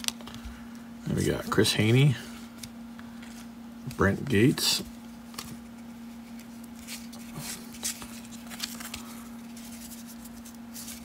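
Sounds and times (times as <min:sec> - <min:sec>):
steady low hum: 0:00.0 - 0:11.0
cardstock rustles and flicks: 0:04.8 - 0:11.0.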